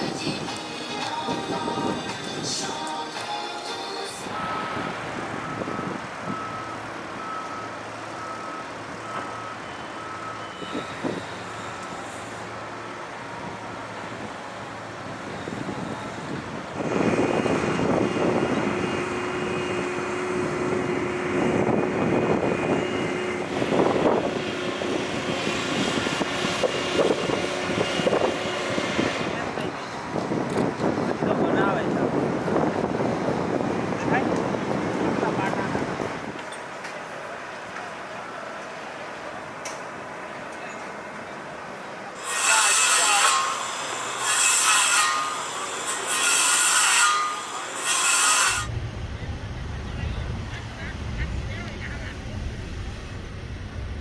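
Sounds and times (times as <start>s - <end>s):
passing engine noise: 10.0s - 36.4s, 48.7s - 54.0s.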